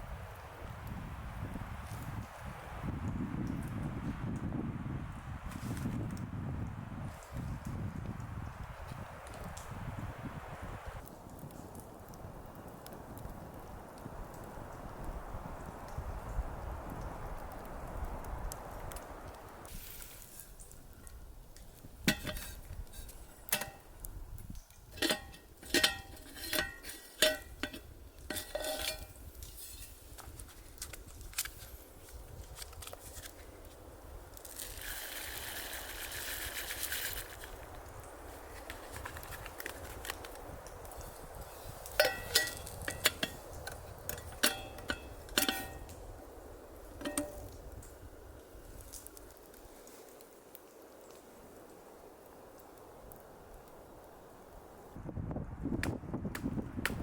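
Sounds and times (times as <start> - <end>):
metal cookware clinking: 25.0 - 29.1, 42.0 - 43.4, 44.1 - 45.8.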